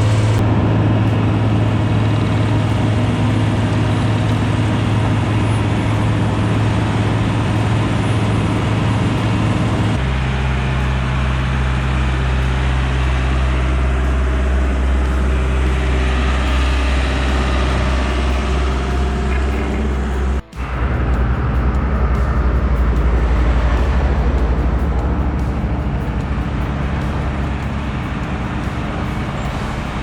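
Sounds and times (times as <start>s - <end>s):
heavy diesel engines running: 0.0s - 30.0s.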